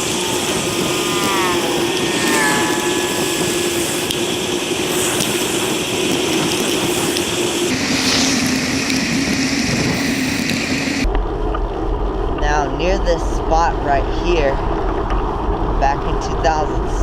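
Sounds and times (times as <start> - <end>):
droning hum: 0.0 - 17.0
road noise: 0.0 - 17.0
wind rush: 0.0 - 17.0.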